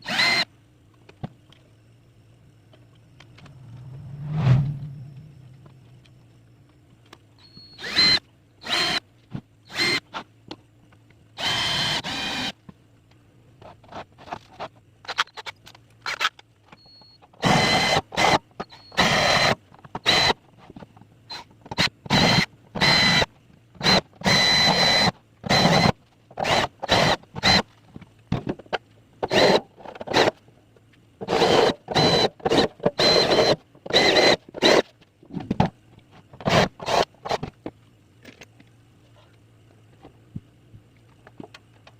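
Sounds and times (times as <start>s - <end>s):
electric drill whining: 0.0s - 0.5s, 7.8s - 9.0s, 11.4s - 12.6s, 17.4s - 18.4s, 21.8s - 27.6s, 31.3s - 34.8s.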